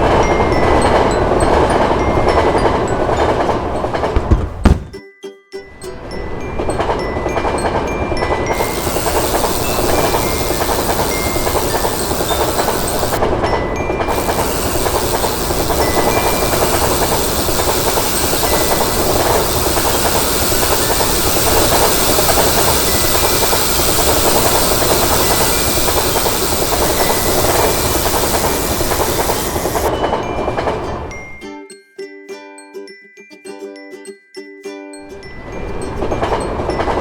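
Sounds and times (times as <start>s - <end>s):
train wheels on rails: 0.0s - 5.0s, 6.3s - 31.3s, 35.4s - 37.0s
hiss: 8.5s - 13.2s, 14.1s - 29.9s.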